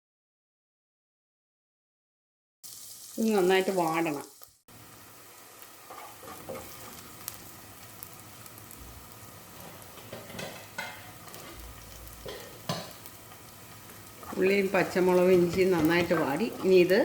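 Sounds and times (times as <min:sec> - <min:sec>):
vegetables sizzling in oil: 0:02.6 - 0:17.0
utensil scraping a pan: 0:05.8 - 0:07.0, 0:14.2 - 0:17.0.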